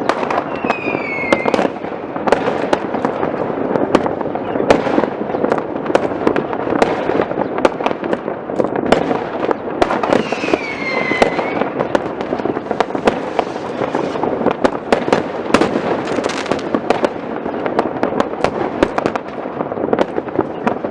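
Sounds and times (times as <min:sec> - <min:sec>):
falling firework whistle: 0:00.0 - 0:01.8, 0:10.0 - 0:14.4
fireworks crackling and banging: 0:00.0 - 0:20.9.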